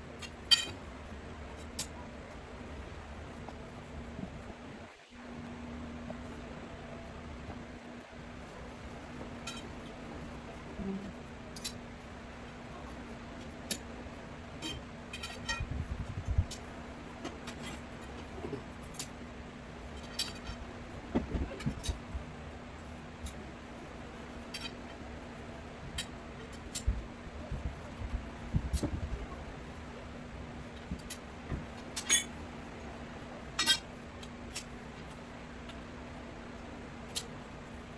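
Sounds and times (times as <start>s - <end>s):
steady low hum: 0.0s - 37.9s
metal poles clinking: 0.2s - 0.8s, 31.9s - 32.4s, 33.6s - 33.9s.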